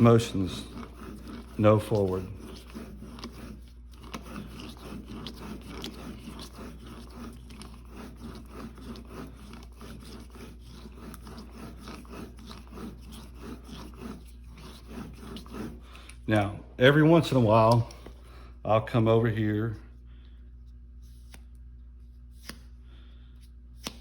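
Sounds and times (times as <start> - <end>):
blade scraping across cardboard: 0.0 - 16.2.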